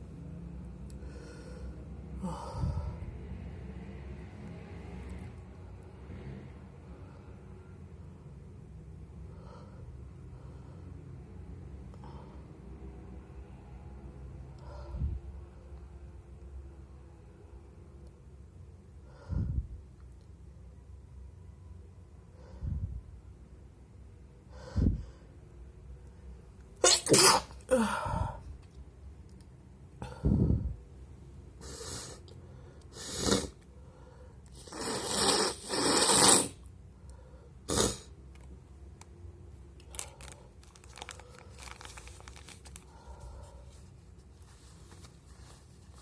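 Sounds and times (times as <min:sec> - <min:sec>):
person sneezing wetly: 0:26.8 - 0:28.0.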